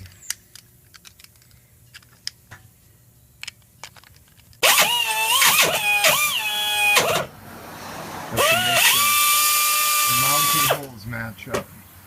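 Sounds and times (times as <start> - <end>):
parts clicking: 0.0 - 2.7, 3.4 - 6.2
die grinder whining: 4.6 - 7.3, 8.4 - 10.8.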